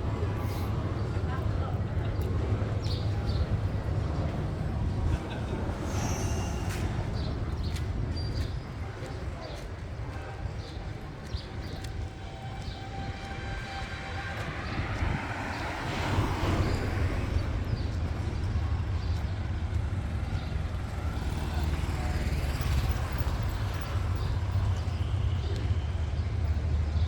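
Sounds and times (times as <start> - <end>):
diesel train rumbling: 0.0 - 27.0.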